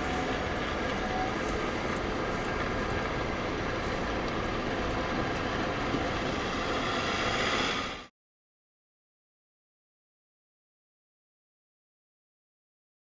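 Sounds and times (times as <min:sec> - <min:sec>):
truck engine and road noise: 0:00.0 - 0:08.1.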